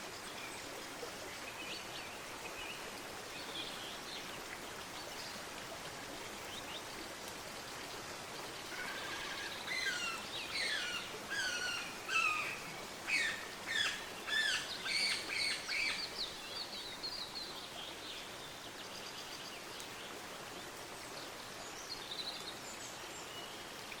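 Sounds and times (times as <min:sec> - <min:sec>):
background hiss: 0:00.0 - 0:24.0
birds chirping: 0:08.7 - 0:17.0.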